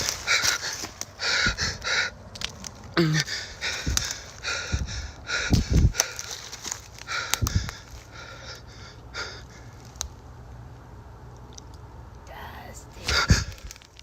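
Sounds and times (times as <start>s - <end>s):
man breathing hard: 0.0s - 2.3s, 2.9s - 9.9s, 12.4s - 13.7s
low thuds: 1.4s - 1.9s, 3.7s - 6.0s.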